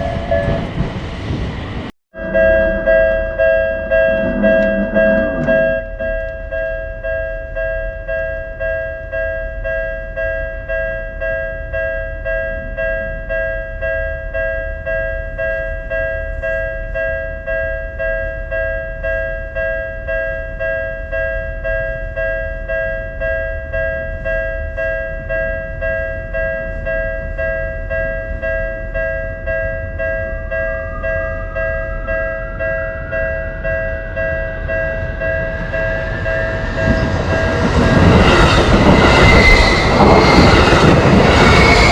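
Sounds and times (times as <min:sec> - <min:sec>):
railroad crossing warning bell: 0:00.0 - 0:01.0, 0:02.1 - 0:41.9
train approaching: 0:00.0 - 0:41.9
rising whine: 0:02.2 - 0:06.3, 0:29.6 - 0:41.9.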